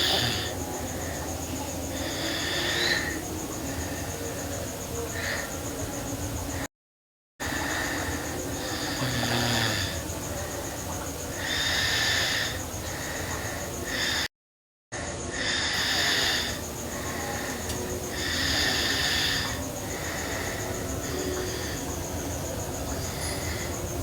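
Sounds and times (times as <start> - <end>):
girl snoring: 0.0 - 0.6, 8.6 - 10.1.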